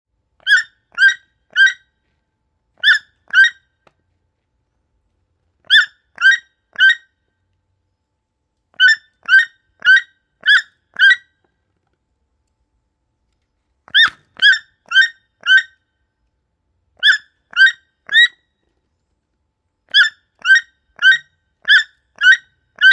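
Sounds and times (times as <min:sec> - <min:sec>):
toucan calling: 0:00.4 - 0:01.8, 0:02.8 - 0:03.6, 0:05.7 - 0:07.0, 0:08.8 - 0:11.3, 0:13.9 - 0:15.8, 0:17.0 - 0:18.4, 0:19.9 - 0:22.9.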